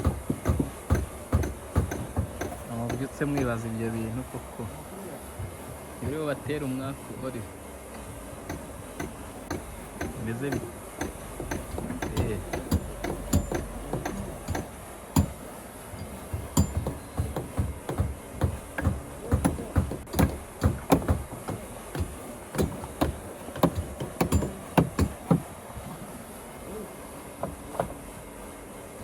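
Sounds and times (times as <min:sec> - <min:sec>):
hammers knocking on timber: 0:00.0 - 0:04.2, 0:05.4 - 0:06.5, 0:08.4 - 0:26.0.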